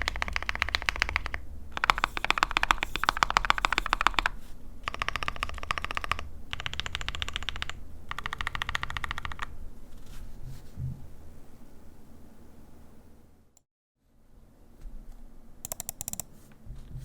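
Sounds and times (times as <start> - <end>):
fast typing on mechanical keyboard: 0.0 - 9.5, 15.7 - 16.3.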